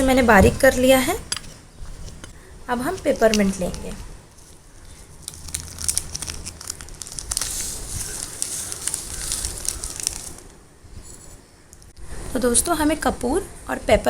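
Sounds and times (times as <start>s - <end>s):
plastic packet crinkling: 2.8s - 11.9s.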